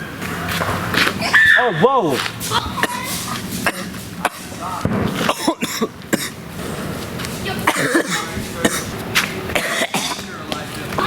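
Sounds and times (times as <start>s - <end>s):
voices: 0.0s - 11.0s
person coughing: 2.8s - 4.5s, 5.2s - 6.4s, 7.6s - 8.9s, 9.6s - 10.3s.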